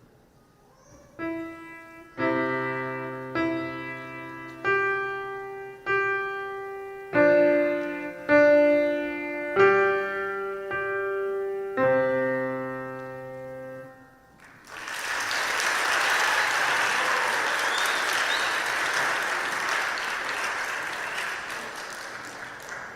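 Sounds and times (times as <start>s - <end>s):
piano chord ringing: 1.2s - 14.4s
audience applauding: 14.4s - 22.9s.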